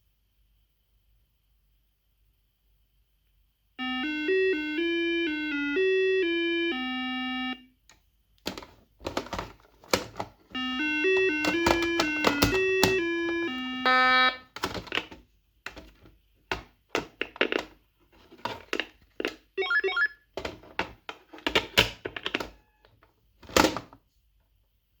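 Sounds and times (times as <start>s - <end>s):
intercom electronic call melody: 3.8s - 7.7s, 10.6s - 14.5s, 19.6s - 20.2s.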